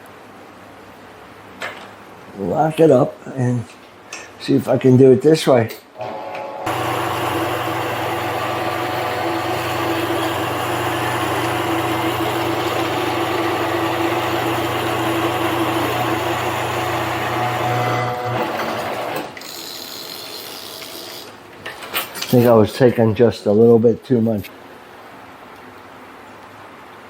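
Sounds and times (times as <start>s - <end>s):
lathe motor and gear hum: 6.0s - 21.2s.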